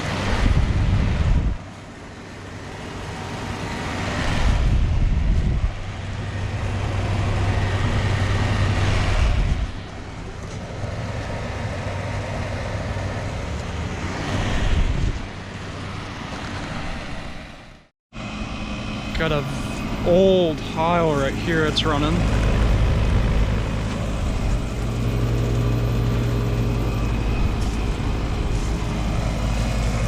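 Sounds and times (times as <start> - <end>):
condenser fans rushing: 18.2 - 30.0.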